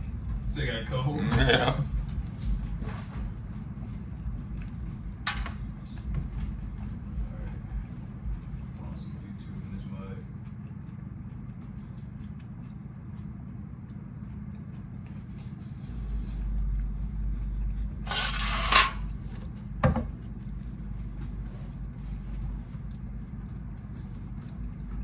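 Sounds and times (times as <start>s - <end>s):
deep rumble: 0.0s - 25.0s
low room hum: 0.0s - 25.0s.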